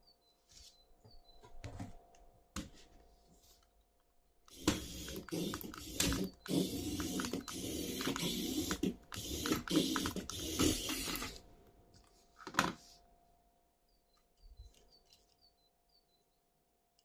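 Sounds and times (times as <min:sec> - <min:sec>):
toy ratcheting rattle: 0:04.5 - 0:11.4.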